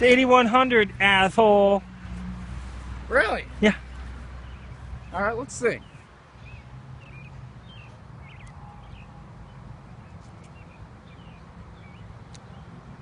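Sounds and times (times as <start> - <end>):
small birds chirping: 3.5 - 13.0
faint sharp clicks: 12.3 - 12.5.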